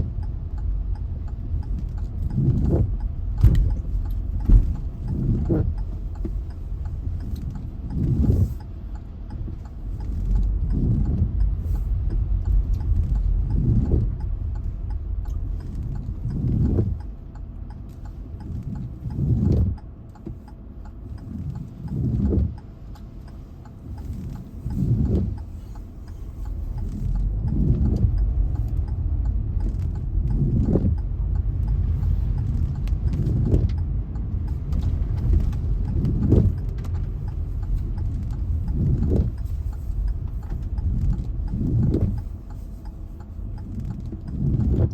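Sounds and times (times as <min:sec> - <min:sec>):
car rumbling on flooded road: 0:00.0 - 0:44.9.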